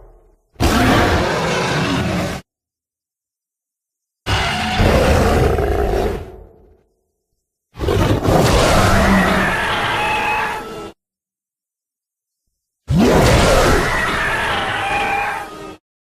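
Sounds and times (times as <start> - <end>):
ape roaring vocalization: 0.6 - 2.4, 4.3 - 6.4, 7.8 - 10.7.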